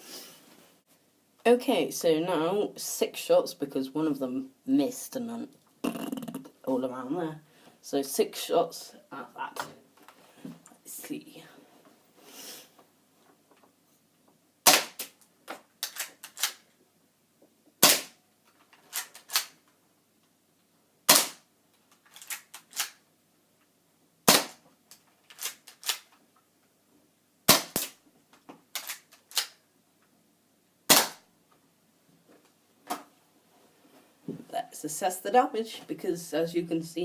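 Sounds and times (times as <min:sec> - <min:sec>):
bb gun shots: 0:14.6 - 0:15.1, 0:17.8 - 0:18.2, 0:21.1 - 0:21.4, 0:24.3 - 0:24.6, 0:27.5 - 0:28.0, 0:30.9 - 0:31.2.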